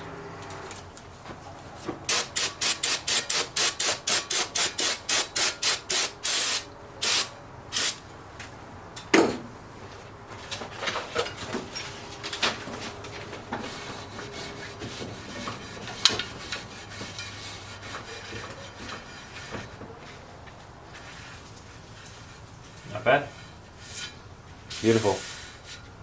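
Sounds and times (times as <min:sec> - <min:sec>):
sandpaper rubbing on metal: 0:02.1 - 0:08.0, 0:13.7 - 0:19.6, 0:23.8 - 0:25.8.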